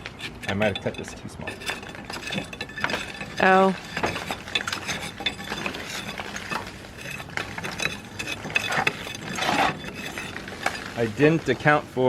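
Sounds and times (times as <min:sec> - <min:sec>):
stone and mortar grit clinking: 0:00.0 - 0:12.0.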